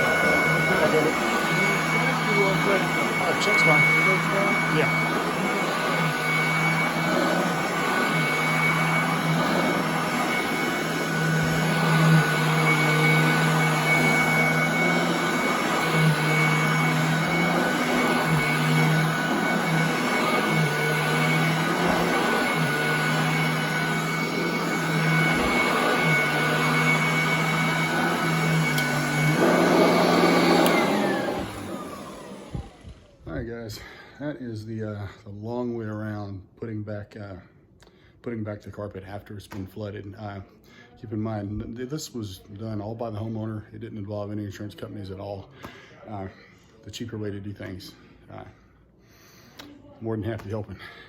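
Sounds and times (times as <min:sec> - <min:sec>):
vacuum motor winding down: 0:00.0 - 0:33.4
vacuum cleaner running: 0:00.0 - 0:34.0.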